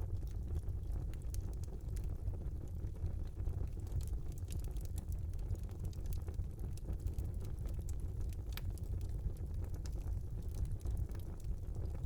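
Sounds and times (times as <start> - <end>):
wood fire crackling: 0.0 - 12.0
fire rumbling: 0.1 - 12.0.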